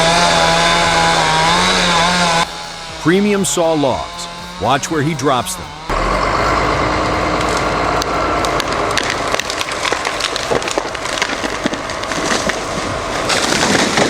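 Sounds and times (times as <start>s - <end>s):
machine hum: 0.0s - 14.0s
heavy logs dropping and cracking: 5.9s - 14.0s.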